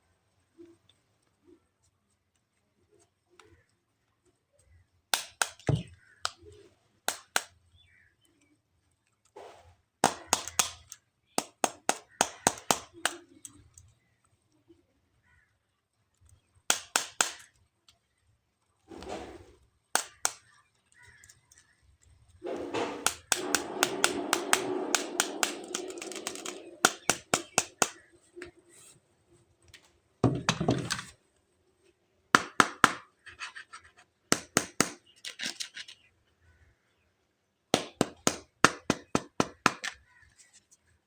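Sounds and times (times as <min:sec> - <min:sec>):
plastic toys clicking and tapping: 0:04.6 - 0:07.7, 0:10.0 - 0:14.0, 0:16.1 - 0:18.1, 0:19.9 - 0:22.4, 0:23.0 - 0:28.5, 0:32.4 - 0:36.1, 0:37.8 - 0:40.8
loud thud: 0:22.4 - 0:27.6.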